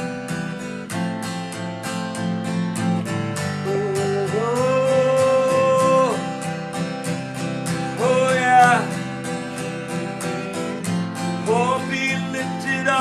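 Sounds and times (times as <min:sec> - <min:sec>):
acoustic guitar strumming: 0:00.0 - 0:13.0
person singing wordless note: 0:03.6 - 0:06.2.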